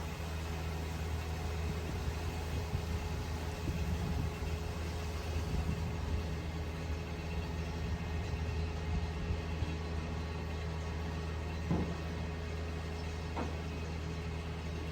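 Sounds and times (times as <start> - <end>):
machinery humming: 0.0 - 8.6.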